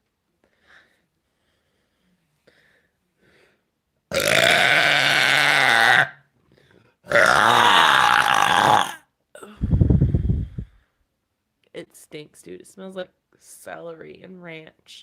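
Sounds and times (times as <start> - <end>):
woman burping: 4.1 - 6.2, 7.1 - 9.6.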